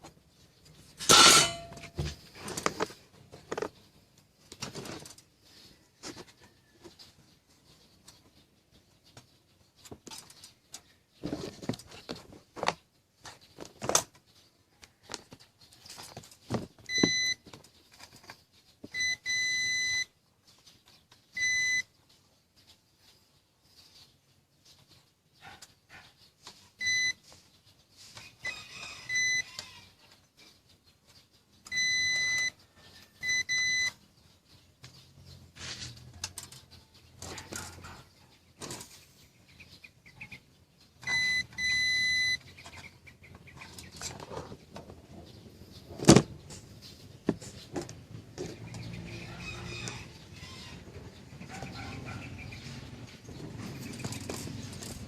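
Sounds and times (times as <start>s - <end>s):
high electronic beeps: 31.7s - 32.6s, 33.2s - 34.0s, 41.0s - 42.4s.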